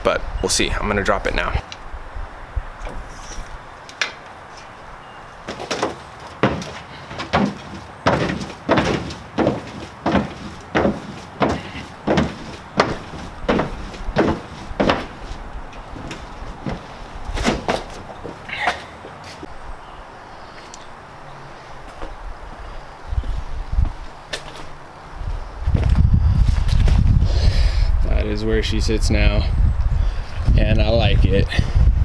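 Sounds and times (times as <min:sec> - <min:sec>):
floor jack knocks: 0:05.5 - 0:18.4.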